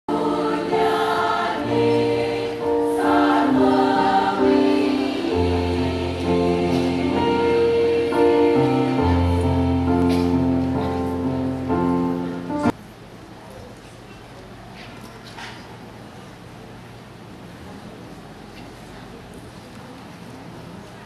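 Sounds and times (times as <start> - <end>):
choir singing sustained chords: 0.1 - 12.7.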